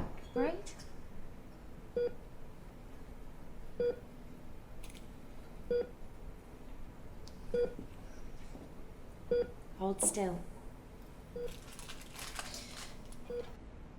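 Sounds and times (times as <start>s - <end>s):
heart rate monitor beeping: 3.8s - 4.0s, 7.5s - 7.8s, 9.3s - 9.5s.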